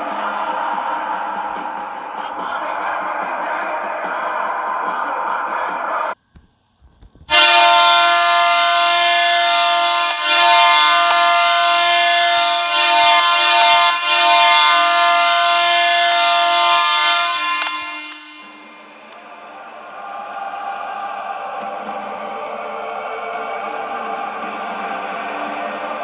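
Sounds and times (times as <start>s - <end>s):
hockey goal horn blast: 7.3s - 19.2s.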